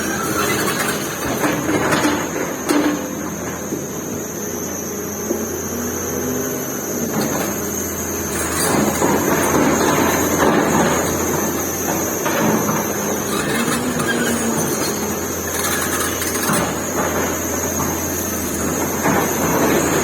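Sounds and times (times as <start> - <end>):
excavator diesel engine: 0.0 - 20.0
rough mechanical working noise: 0.0 - 20.0.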